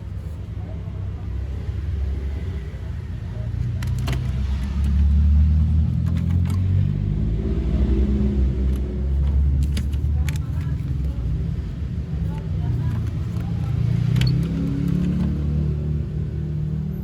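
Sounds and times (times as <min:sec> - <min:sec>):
motor vehicle engine rumbling: 0:00.0 - 0:17.0.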